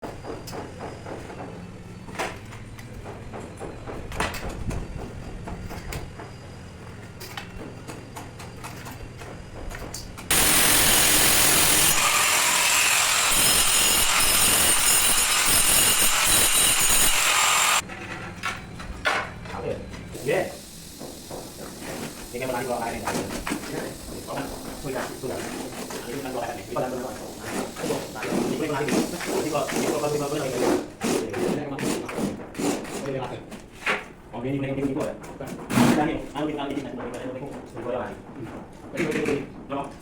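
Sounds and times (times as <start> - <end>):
power tool cutting: 10.3 - 17.8.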